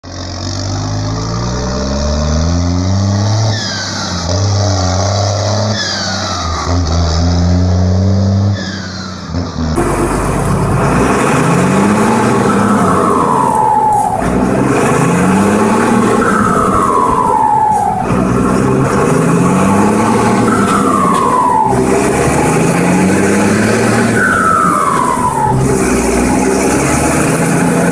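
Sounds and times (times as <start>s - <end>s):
diesel tractor engine revving: 0.0s - 27.9s
falling turbo whistle: 9.8s - 27.9s.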